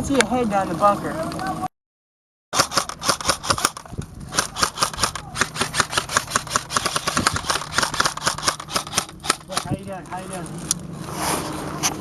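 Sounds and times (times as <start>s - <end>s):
airsoft gun rapid firing: 2.6s - 9.8s.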